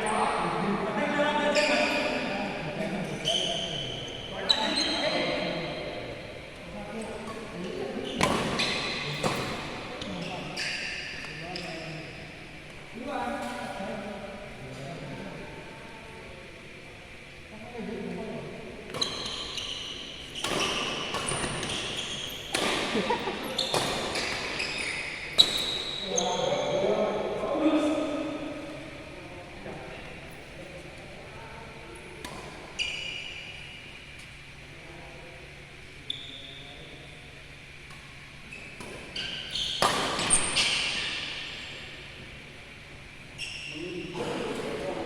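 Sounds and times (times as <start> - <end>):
sports shoes squeaking: 1.4 - 2.3, 3.0 - 5.4, 7.9 - 12.2, 18.9 - 26.8, 32.7 - 34.3, 36.0 - 37.0, 38.4 - 41.7, 43.3 - 44.5
racket hitting shuttlecock: 20.4 - 21.7, 22.5 - 24.6, 39.7 - 41.0.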